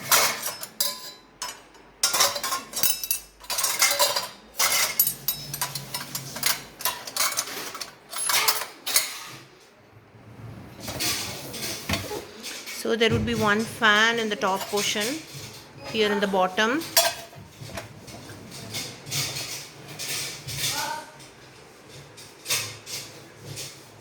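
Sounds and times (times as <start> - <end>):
dishes and cutlery clattering: 0.0 - 9.7, 10.8 - 24.0.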